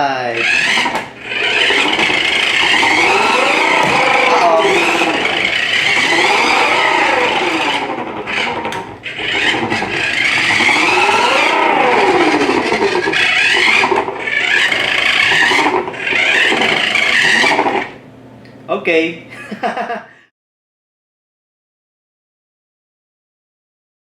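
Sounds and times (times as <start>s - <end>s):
toy car electric motor whining: 0.3s - 18.0s.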